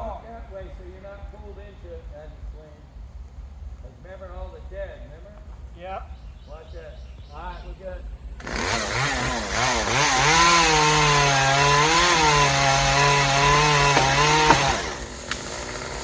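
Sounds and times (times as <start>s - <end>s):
chainsaw revving: 8.3s - 16.0s.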